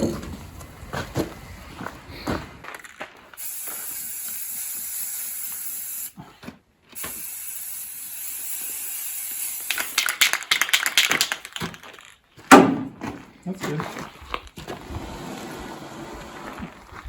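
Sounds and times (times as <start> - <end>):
spray can rattling when shaken: 3.4 - 6.1, 7.0 - 12.2
spray paint can hissing: 3.4 - 6.2, 7.0 - 11.9.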